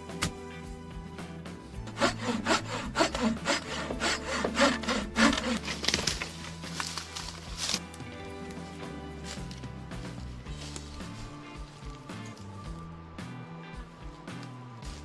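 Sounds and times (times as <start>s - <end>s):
background music: 0.0s - 15.0s
hand saw cutting wood: 1.8s - 7.0s.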